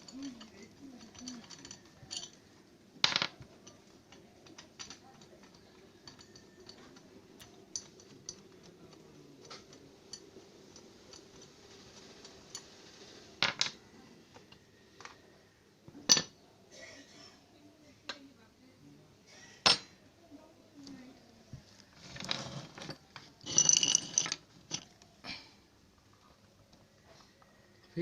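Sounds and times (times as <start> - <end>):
metallic tool clicks and clinks: 0.0 - 2.4, 3.4 - 11.5.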